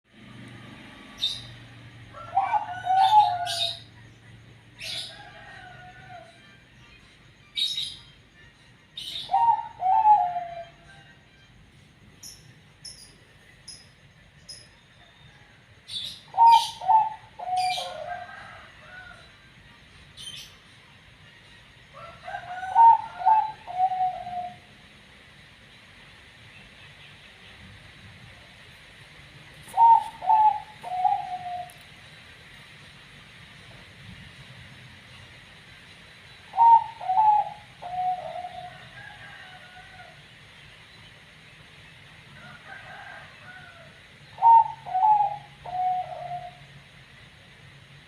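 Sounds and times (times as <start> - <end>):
dove cooing: 2.1 - 3.9, 9.0 - 11.0, 16.3 - 19.1, 22.3 - 24.8, 29.7 - 32.0, 36.5 - 40.2, 42.9 - 46.7.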